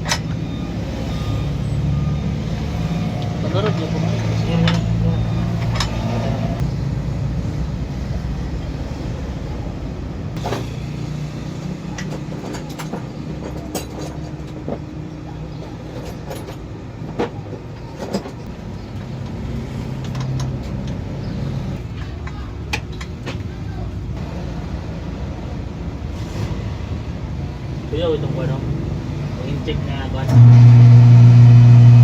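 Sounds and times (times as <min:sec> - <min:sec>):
low motor hum: 0:30.3 - 0:32.0.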